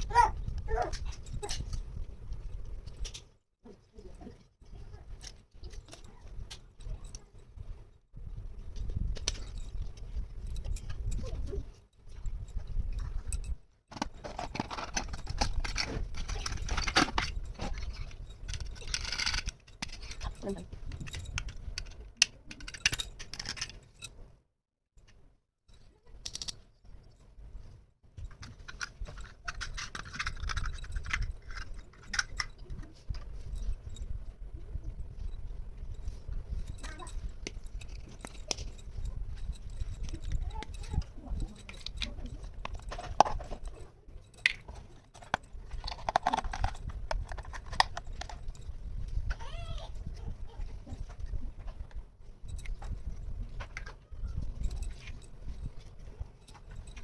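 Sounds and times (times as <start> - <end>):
plastic toy pieces clicking: 13.9 - 23.8, 26.2 - 26.6, 28.3 - 32.8, 44.3 - 48.6.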